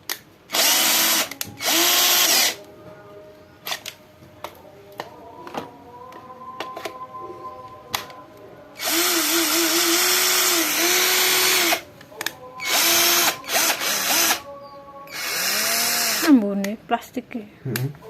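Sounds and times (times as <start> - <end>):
cordless drill motor running: 0.5 - 2.6, 8.8 - 11.8, 12.6 - 14.4, 15.1 - 16.3.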